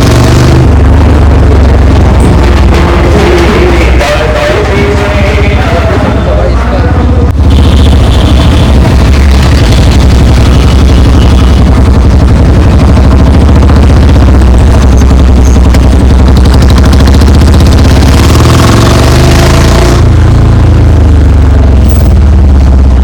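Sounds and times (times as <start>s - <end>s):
motorcycle engine running loud: 0.0s - 23.0s.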